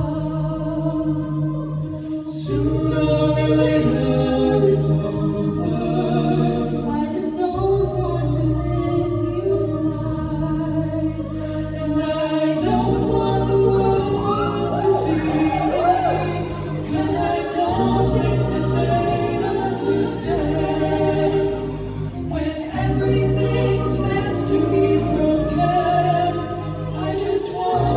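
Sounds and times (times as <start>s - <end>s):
a cappella group singing: 0.0s - 27.9s
deep vocal bass line: 0.0s - 27.9s.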